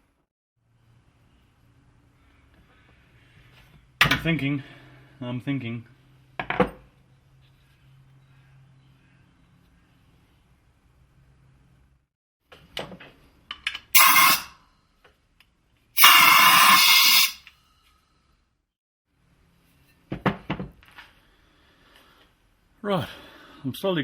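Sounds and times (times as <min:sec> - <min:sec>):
compressed air hissing: 0:14.0 - 0:14.5, 0:16.0 - 0:17.4.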